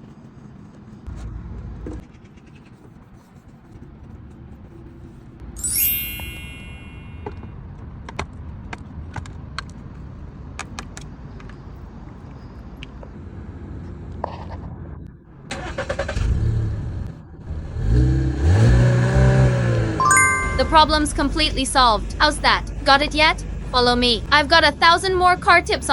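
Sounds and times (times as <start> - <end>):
car engine cranking and starting: 15.5 - 16.8.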